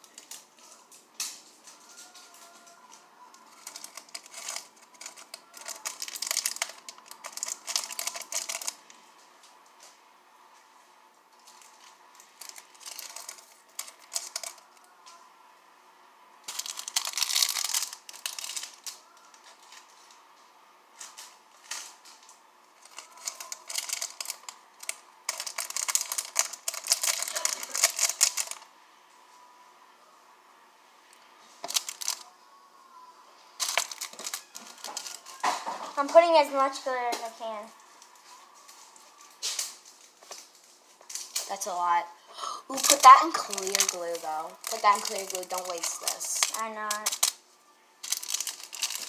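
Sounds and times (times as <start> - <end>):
glitter rattling in shaker: 3.4 - 8.9, 11.4 - 14.8, 16.4 - 19.8, 22.8 - 28.6, 31.6 - 32.2, 33.6 - 36.2, 42.7 - 47.4, 48.0 - 49.0.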